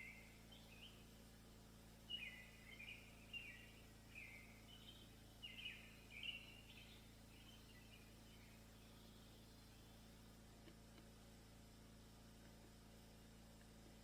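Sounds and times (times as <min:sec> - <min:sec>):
faint bird chirping: 0:00.0 - 0:11.0.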